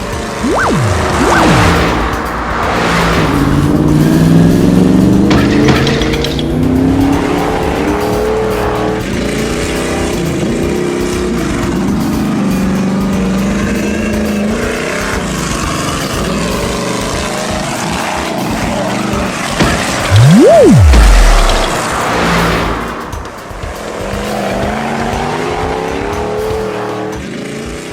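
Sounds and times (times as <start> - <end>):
whistle sweeping up and down: 0.3 - 2.7, 20.1 - 21.9.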